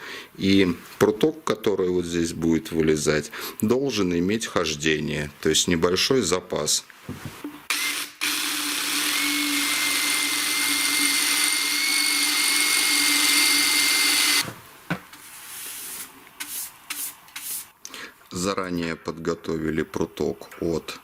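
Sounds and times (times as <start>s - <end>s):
electric drill running: 7.7s - 14.4s.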